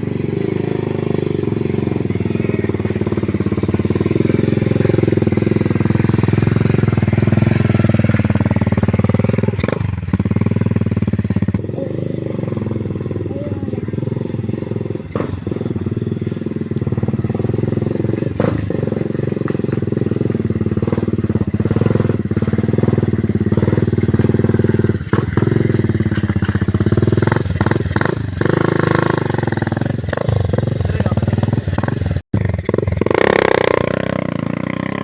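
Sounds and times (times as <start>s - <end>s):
motorcycle engine running: 0.0s - 35.0s
sharp knocks and clatter: 18.0s - 22.6s, 25.0s - 28.6s.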